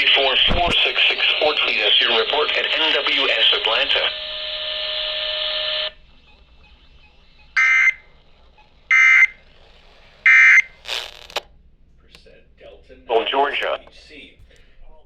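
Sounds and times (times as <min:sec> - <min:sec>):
harsh digital data bursts: 0:00.0 - 0:11.4
steady buzzing tone: 0:00.0 - 0:11.4.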